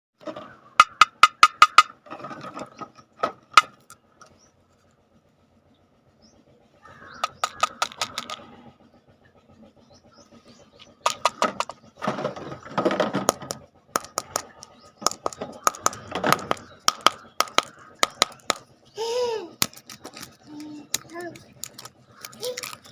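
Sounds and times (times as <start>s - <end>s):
rapid plastic ratchet clicks: 7.1s - 8.5s, 13.3s - 18.7s, 19.6s - 22.9s.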